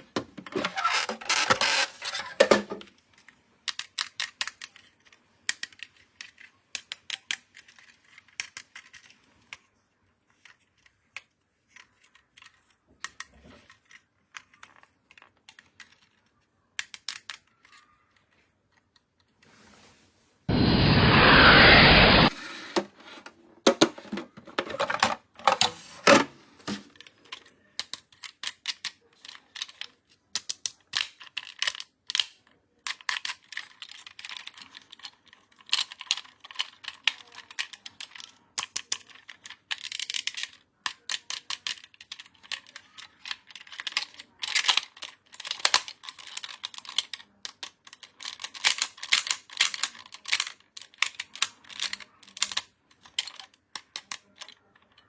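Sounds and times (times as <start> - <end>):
crinkly packaging rustling: 0.0 - 3.3, 22.3 - 27.6
clicks and taps of toy handling: 0.0 - 19.4, 23.2 - 55.0.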